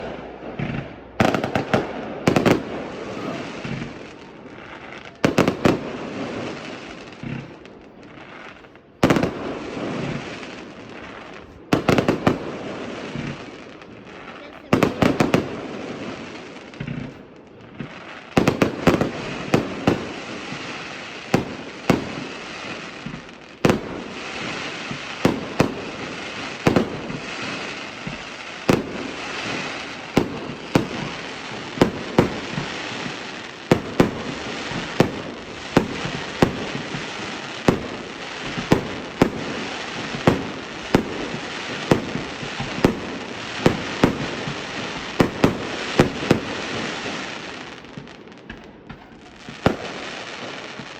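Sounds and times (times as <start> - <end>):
continuous hiss: 0.0 - 50.9
fireworks bangs: 0.0 - 50.9.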